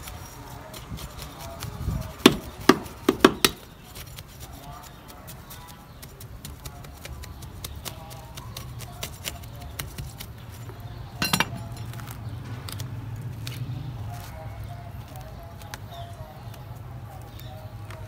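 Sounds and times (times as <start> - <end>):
objects clattering: 11.2 - 11.9
hard objects clicking and clinking: 11.2 - 12.0.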